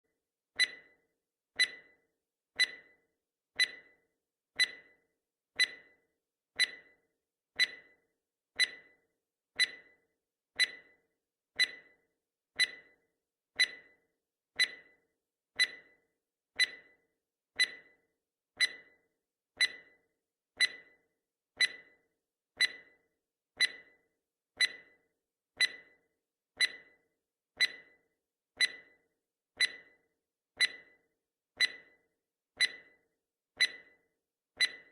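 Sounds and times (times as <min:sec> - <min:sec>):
clock ticking: 0:00.6 - 0:01.0, 0:01.6 - 0:02.0, 0:02.6 - 0:03.0, 0:03.6 - 0:04.0, 0:04.6 - 0:05.0, 0:05.6 - 0:06.0, 0:06.6 - 0:07.0, 0:07.6 - 0:08.0, 0:08.6 - 0:09.0, 0:09.6 - 0:10.0, 0:10.6 - 0:11.0, 0:11.6 - 0:12.0, 0:12.6 - 0:13.0, 0:13.6 - 0:14.0, 0:14.6 - 0:15.0, 0:15.6 - 0:16.0, 0:16.6 - 0:17.0, 0:17.6 - 0:18.0, 0:18.6 - 0:19.0, 0:19.6 - 0:20.0, 0:20.6 - 0:21.0, 0:21.6 - 0:22.0, 0:22.6 - 0:23.0, 0:23.6 - 0:24.0, 0:24.6 - 0:25.0, 0:25.6 - 0:26.0, 0:26.6 - 0:27.0, 0:27.6 - 0:28.0, 0:28.6 - 0:29.0, 0:29.6 - 0:30.0, 0:30.6 - 0:31.0, 0:31.6 - 0:32.0, 0:32.6 - 0:34.0, 0:34.6 - 0:34.9.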